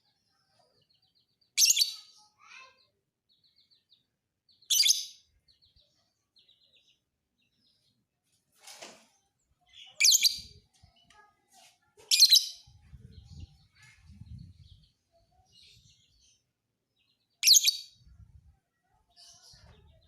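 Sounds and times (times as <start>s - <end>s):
lovebird shrill chirping: 17.4s - 18.0s.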